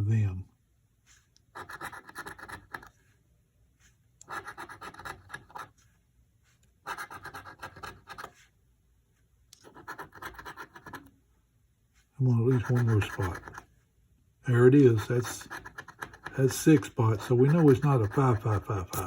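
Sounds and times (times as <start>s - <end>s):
lottery ticket being scratched: 1.5s - 2.9s, 4.2s - 5.8s, 6.8s - 8.5s, 9.6s - 11.1s, 12.2s - 13.7s, 14.7s - 19.0s.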